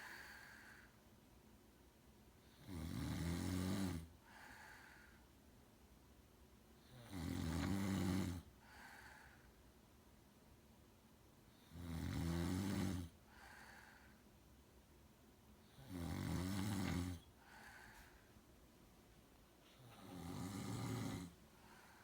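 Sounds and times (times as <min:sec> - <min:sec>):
soft breath: 0:00.0 - 0:01.1, 0:04.2 - 0:05.4, 0:08.6 - 0:09.7, 0:13.2 - 0:14.4, 0:17.2 - 0:18.7, 0:21.3 - 0:22.0
loud heavy snoring: 0:02.6 - 0:04.1, 0:06.9 - 0:08.5, 0:11.7 - 0:13.2, 0:15.8 - 0:17.2, 0:19.9 - 0:21.4.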